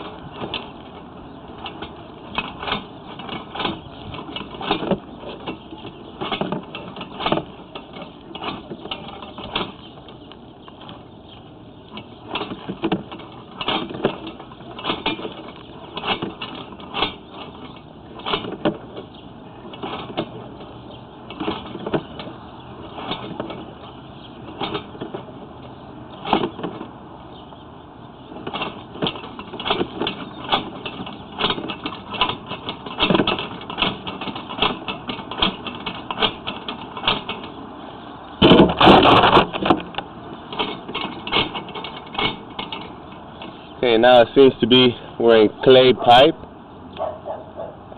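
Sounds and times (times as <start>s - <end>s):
push cable clicking and rattling: 0.0s - 11.0s, 28.4s - 37.6s, 38.4s - 44.5s
cable scraping: 0.0s - 46.4s.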